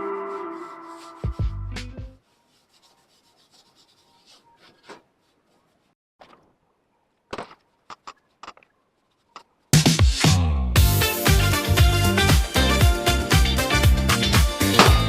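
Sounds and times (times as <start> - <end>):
scraping and rubbing: 0.0 - 1.4, 2.2 - 6.5, 7.4 - 9.7
music: 0.0 - 2.2, 9.8 - 15.0.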